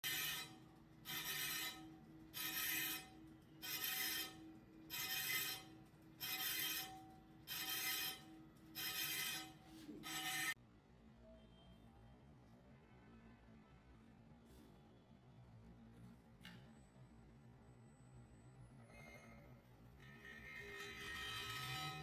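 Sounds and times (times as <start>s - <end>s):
rasping strokes on metal rim: 0.0s - 10.6s, 20.0s - 22.0s.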